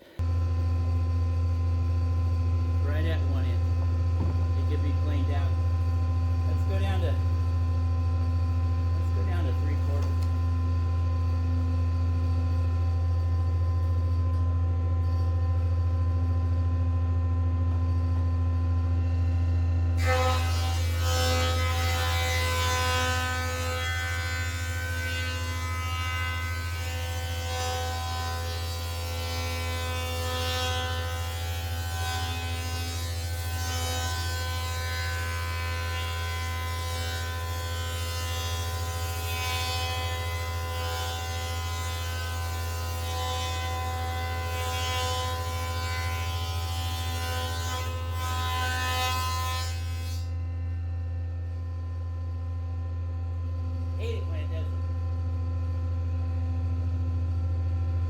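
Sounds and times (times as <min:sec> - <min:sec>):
thickness planer humming: 0:00.0 - 0:13.4, 0:20.0 - 0:50.2.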